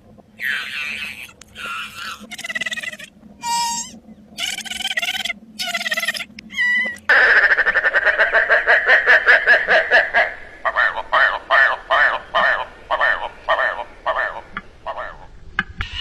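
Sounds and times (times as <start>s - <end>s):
short pitched animal calls: 0.4s - 7.3s.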